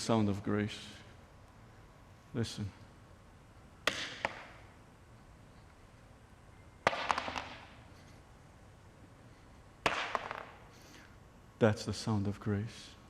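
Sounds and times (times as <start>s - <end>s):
stones clattering with echo: 6.8s - 7.7s, 9.8s - 10.6s.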